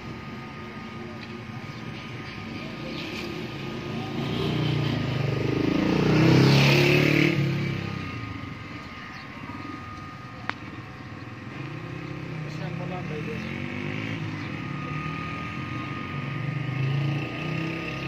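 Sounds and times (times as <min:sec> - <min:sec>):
vehicle passing by: 0:02.5 - 0:10.0, 0:11.5 - 0:18.0.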